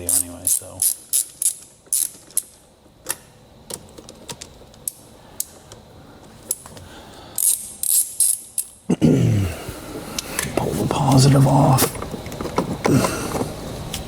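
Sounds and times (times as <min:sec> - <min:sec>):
ratchet wrench clicking: 0:00.0 - 0:02.5, 0:07.4 - 0:08.8.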